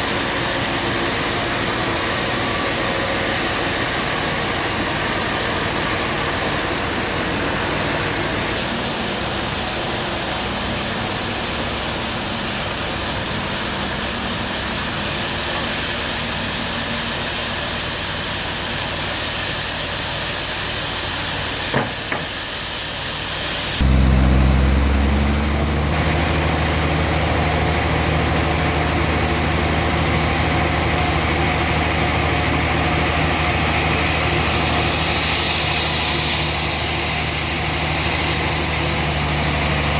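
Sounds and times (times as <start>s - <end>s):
steady mechanical noise: 0.0s - 39.9s
engine running with low hum: 23.8s - 39.9s.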